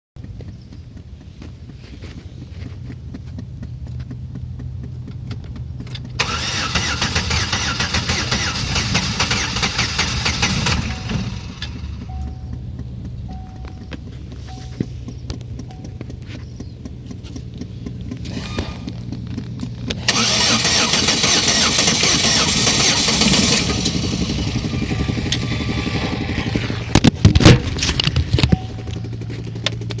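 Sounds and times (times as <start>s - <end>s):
engine running with knocking tick: 0.2s - 30.0s
loud clattering thumps: 23.2s - 30.0s.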